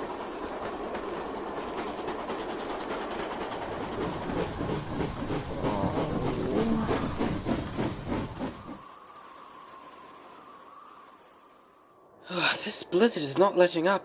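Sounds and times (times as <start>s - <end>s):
train wheels on rails: 0.0s - 9.1s
steam locomotive puffing: 3.6s - 8.8s.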